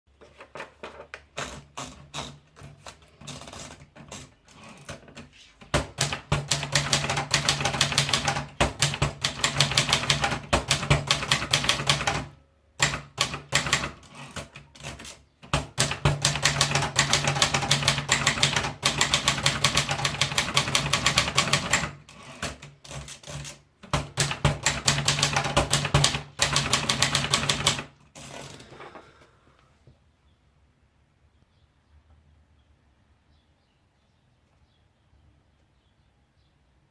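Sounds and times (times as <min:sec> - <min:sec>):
typewriter key strikes: 0:05.8 - 0:27.9.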